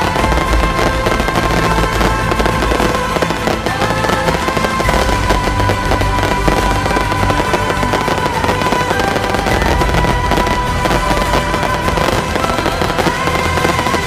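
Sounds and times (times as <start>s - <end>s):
firecrackers crackling: 0.0s - 14.0s
high held tones: 0.0s - 14.0s.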